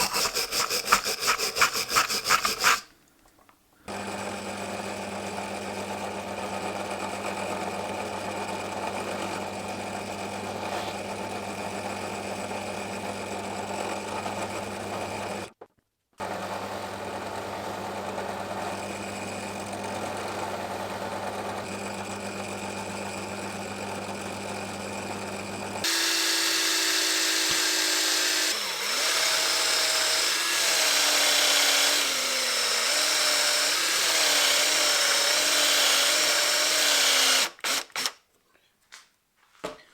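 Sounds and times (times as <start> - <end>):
electric power tool humming: 16.2 - 38.2
high-pitched power tool whine: 25.8 - 38.1.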